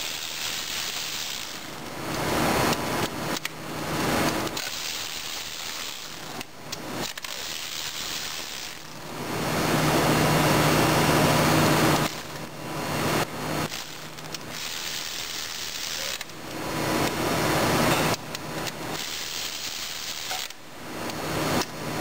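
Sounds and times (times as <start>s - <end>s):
cordless ratchet motor: 0.0s - 3.6s, 4.2s - 9.0s, 13.6s - 16.3s, 18.9s - 20.6s.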